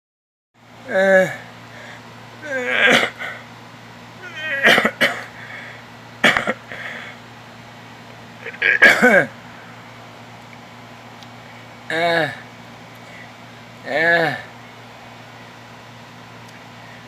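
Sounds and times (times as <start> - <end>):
person crying out: 0.9 - 1.4, 2.4 - 3.4, 4.2 - 5.3
harsh strained breathing gasps: 0.9 - 3.5, 4.2 - 5.8, 6.4 - 7.2.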